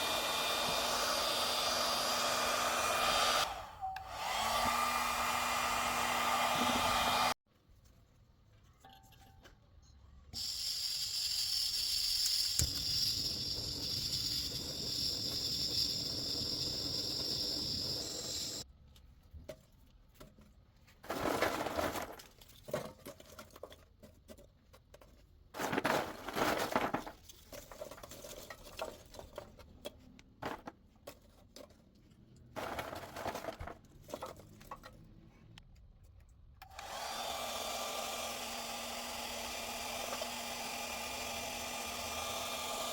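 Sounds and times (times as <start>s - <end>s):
hair dryer fan whirring: 0.0s - 7.4s, 36.6s - 42.9s.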